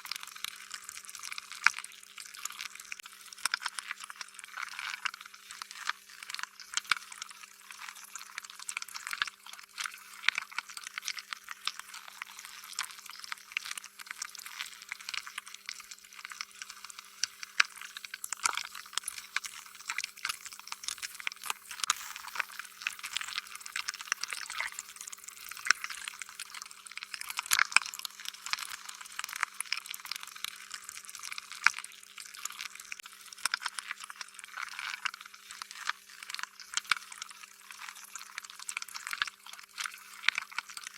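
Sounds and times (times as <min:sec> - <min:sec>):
slime squelching: 0:13.6 - 0:27.2.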